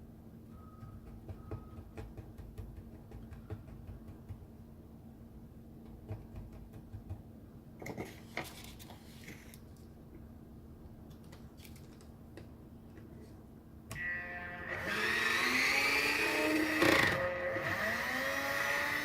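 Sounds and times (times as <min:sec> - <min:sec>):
machine humming: 0:13.9 - 0:19.0.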